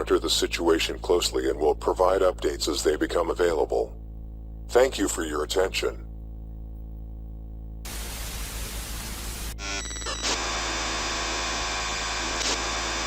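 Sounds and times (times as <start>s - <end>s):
harsh buzzy static: 0.0s - 13.0s
low hum: 0.0s - 13.0s
radio static hiss: 7.8s - 13.0s.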